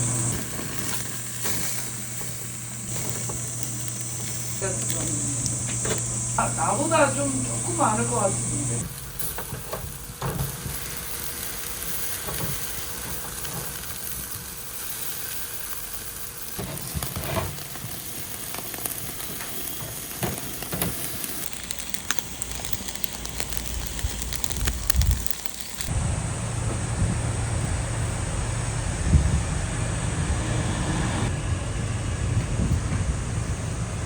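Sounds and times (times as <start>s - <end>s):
chicken sizzling on a grill: 0.0s - 25.9s
crackles: 0.0s - 25.9s.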